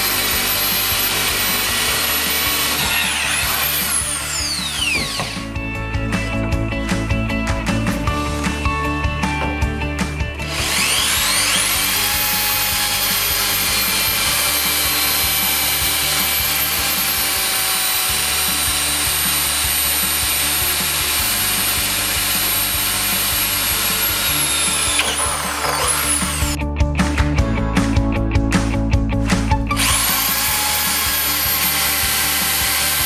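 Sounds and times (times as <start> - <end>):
drill motor whining: 0.0 - 5.6, 10.4 - 26.6, 29.7 - 33.0.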